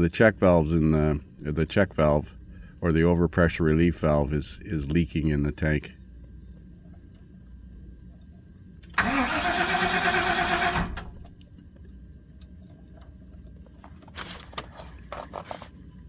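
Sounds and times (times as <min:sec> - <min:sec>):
engine cranking without starting: 0:09.0 - 0:11.2.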